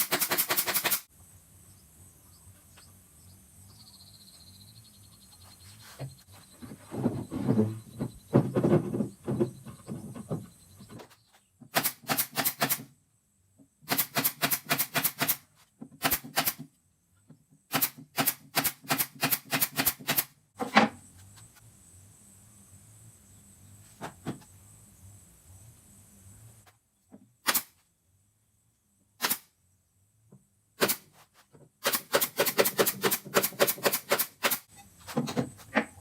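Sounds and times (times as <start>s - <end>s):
sharp rapid clicks: 0.0s - 1.1s.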